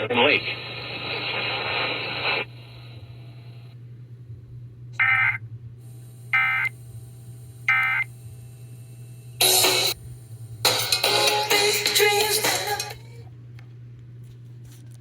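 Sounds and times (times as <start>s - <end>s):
steady low hum: 0.0s - 15.0s
screeching digital tone bursts: 5.0s - 5.4s, 6.4s - 6.7s, 7.7s - 8.1s
music: 9.4s - 13.3s.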